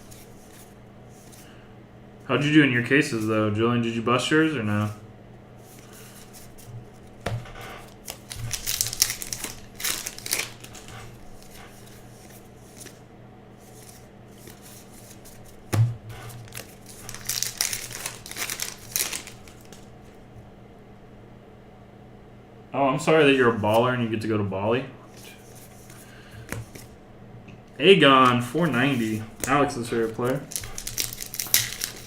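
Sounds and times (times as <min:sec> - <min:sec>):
low steady hum: 0:00.0 - 0:32.0
cards being handled: 0:05.6 - 0:13.0, 0:13.6 - 0:20.2, 0:25.1 - 0:27.0, 0:28.2 - 0:32.0
card wrappers crinkling and tearing: 0:07.8 - 0:13.0, 0:16.3 - 0:19.9, 0:28.2 - 0:32.0.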